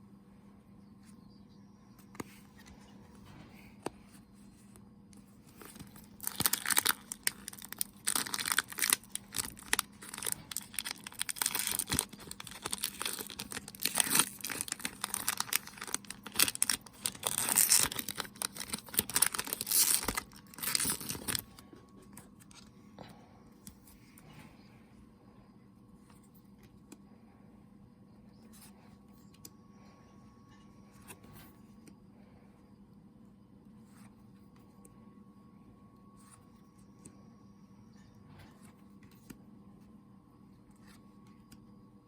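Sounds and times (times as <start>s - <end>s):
plastic wrapper tearing and crumpling: 5.7s - 21.6s.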